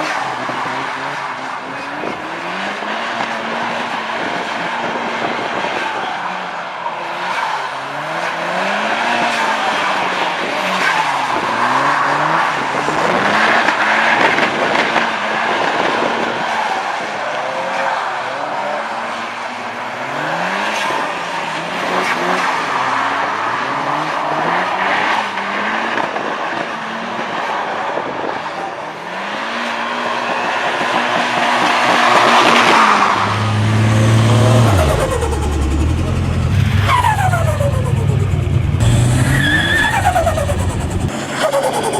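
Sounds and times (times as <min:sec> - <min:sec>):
turbocharged car engine revving: 0:00.0 - 0:05.8, 0:07.0 - 0:16.4, 0:29.0 - 0:41.9
turbo flutter: 0:33.9 - 0:41.9.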